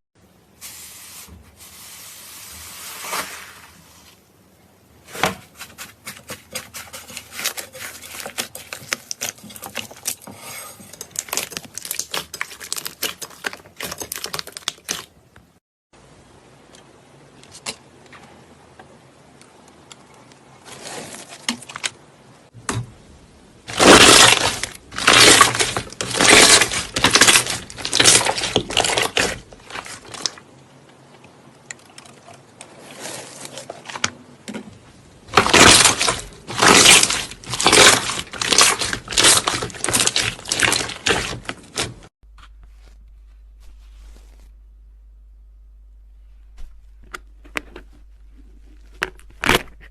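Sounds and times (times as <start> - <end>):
slime crackling when squeezed: 23.7 - 30.3, 35.3 - 41.8
faint low hum: 42.3 - 49.9.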